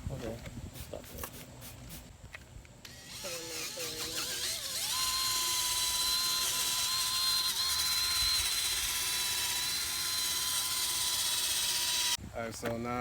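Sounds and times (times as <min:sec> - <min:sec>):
power drill sanding plastic: 0:02.9 - 0:12.2.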